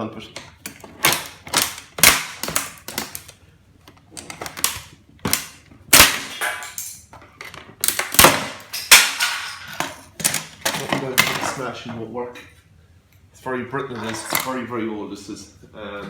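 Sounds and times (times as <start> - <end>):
plastic casing cracking under blows: 0.6 - 11.2.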